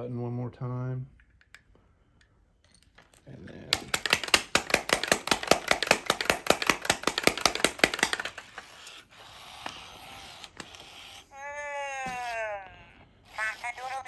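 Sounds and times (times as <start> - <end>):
toy motor and gears clicking: 3.7 - 12.6, 13.3 - 14.0.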